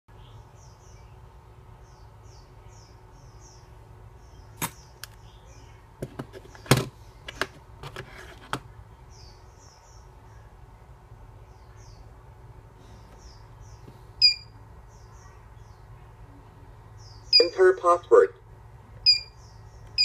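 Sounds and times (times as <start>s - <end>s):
faint high bird chirps: 13.0s - 17.7s, 19.0s - 20.0s.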